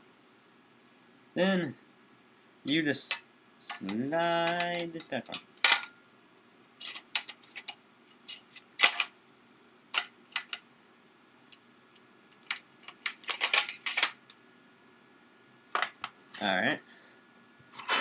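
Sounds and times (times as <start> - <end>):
small plastic parts clicking: 6.8 - 9.1, 9.9 - 10.6, 12.5 - 14.2.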